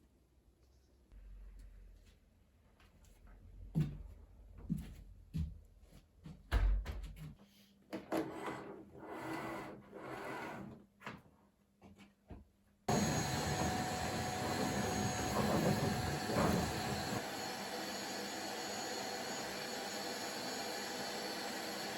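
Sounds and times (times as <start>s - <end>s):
objects knocking and clunking: 11.9s - 17.2s
vacuum cleaner whining: 12.9s - 21.9s.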